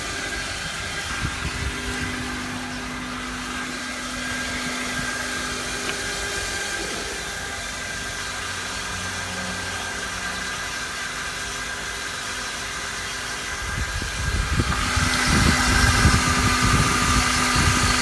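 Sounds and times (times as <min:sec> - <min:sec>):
low uneven engine rumble: 0:00.0 - 0:10.8
car engine high-pitched whine: 0:00.0 - 0:18.0.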